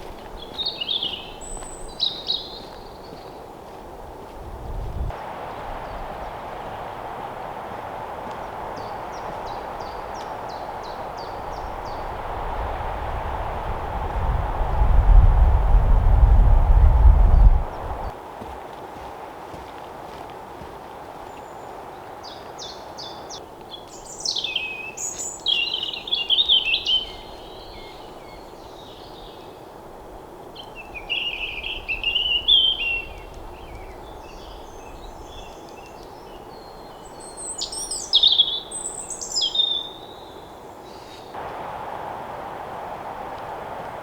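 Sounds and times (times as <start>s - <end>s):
songbird chirps and trills: 0.0s - 3.6s, 21.3s - 29.6s, 30.6s - 41.8s
steady background hiss: 5.0s - 15.9s, 20.9s - 44.0s.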